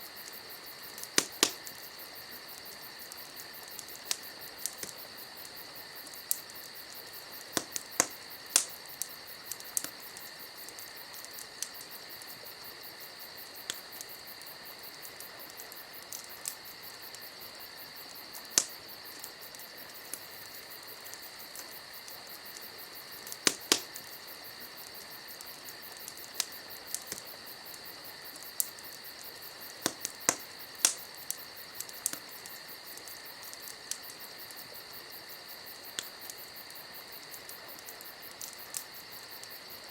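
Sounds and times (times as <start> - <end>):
campfire crackling and popping: 0.0 - 39.9
crickets chirping: 0.0 - 39.9.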